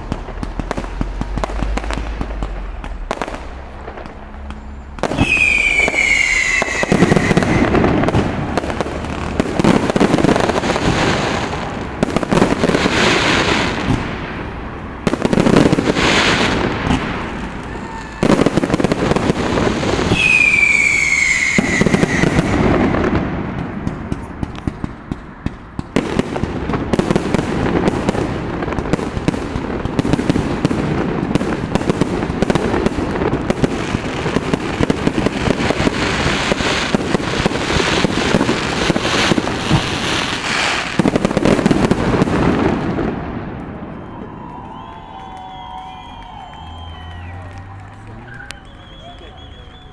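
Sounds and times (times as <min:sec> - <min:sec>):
firework shells bursting: 0:00.0 - 0:14.1, 0:15.1 - 0:26.0
crackling firework bangs: 0:00.0 - 0:49.9
falling firework whistle: 0:04.4 - 0:08.2, 0:15.8 - 0:23.2, 0:43.6 - 0:49.9.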